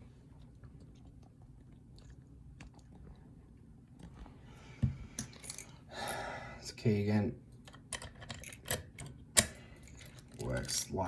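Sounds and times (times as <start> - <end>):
lock and key clicking: 7.7 - 10.9.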